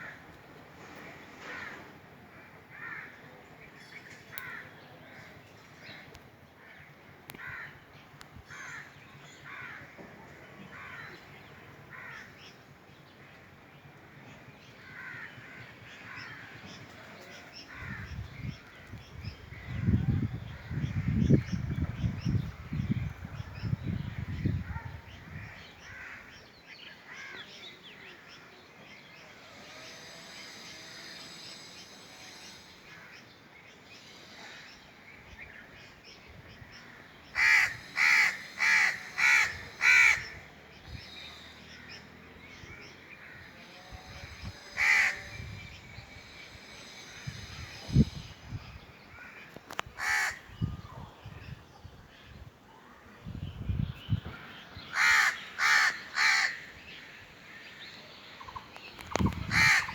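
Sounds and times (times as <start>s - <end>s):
distant crow calls: 1.4s - 3.4s, 4.3s - 5.4s, 6.1s - 7.8s, 8.4s - 21.6s, 24.7s - 26.4s, 27.0s - 27.6s, 36.7s - 48.2s, 49.1s - 50.7s, 54.4s - 59.9s
crows cawing: 2.7s - 3.2s, 4.3s - 4.7s, 6.6s - 7.8s, 8.5s - 10.0s, 11.9s - 12.4s, 14.8s - 18.2s, 25.4s - 26.3s, 37.3s - 40.4s, 44.6s - 45.5s, 49.1s - 50.5s, 54.9s - 56.7s, 59.1s - 59.9s.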